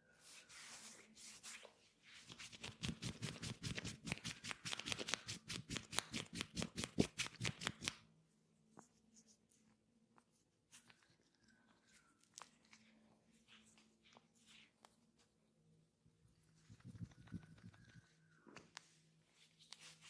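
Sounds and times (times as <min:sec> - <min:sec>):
hands slapping body in massage: 0:02.2 - 0:08.0.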